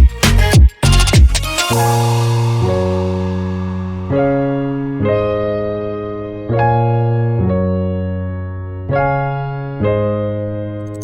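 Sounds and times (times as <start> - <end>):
electric piano chords: 1.8 - 11.0.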